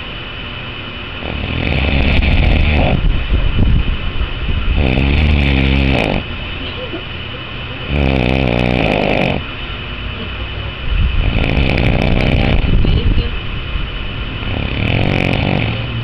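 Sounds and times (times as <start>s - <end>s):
loud rasping snoring: 1.2s - 3.0s, 4.7s - 6.3s, 7.9s - 9.5s, 11.1s - 12.8s, 14.4s - 16.0s.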